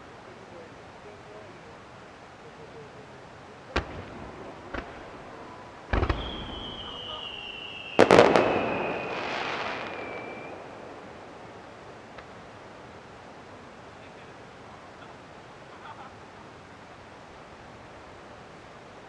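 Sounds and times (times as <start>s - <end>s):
fireworks bangs: 3.7s - 11.8s
firework hissing tail: 3.7s - 12.1s
firework whistle falling in pitch: 5.9s - 10.9s.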